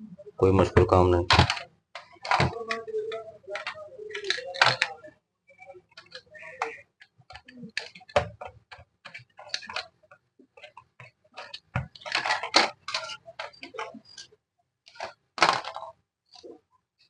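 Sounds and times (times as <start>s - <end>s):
small parts clicking and rattling: 1.3s - 5.1s, 5.9s - 14.3s.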